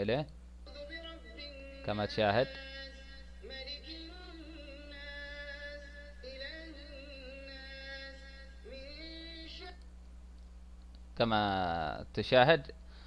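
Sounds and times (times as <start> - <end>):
steady low hum: 0.0 - 13.0
man singing: 0.7 - 9.8.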